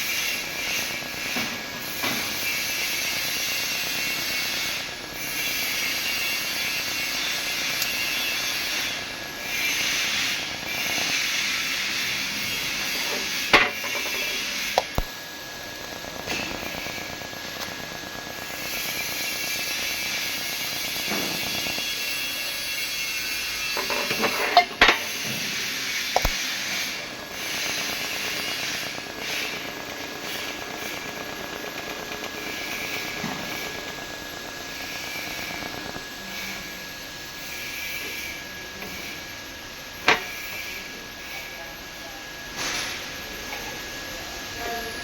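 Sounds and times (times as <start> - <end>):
welding arc hissing: 0.0 - 45.0.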